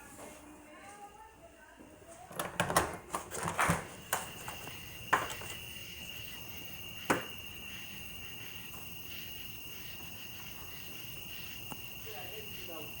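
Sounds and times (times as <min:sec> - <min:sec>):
crickets chirping: 0:03.4 - 0:13.0.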